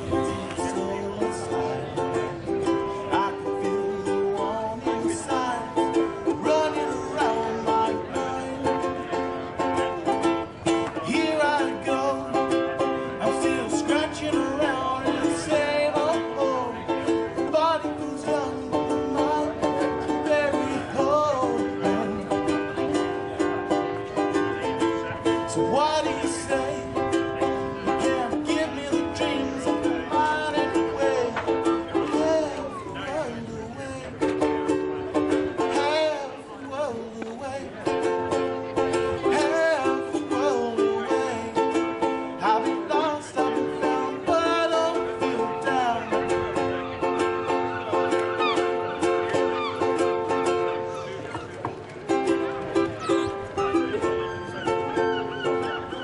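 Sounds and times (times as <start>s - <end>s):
person singing: 0.0s - 9.4s, 11.0s - 23.2s, 25.4s - 34.5s, 39.2s - 50.7s
strummed acoustic guitar: 0.0s - 56.0s.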